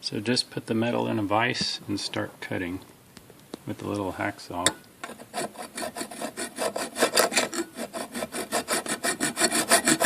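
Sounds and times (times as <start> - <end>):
hacksaw rasping on sheet metal: 5.0 - 10.0.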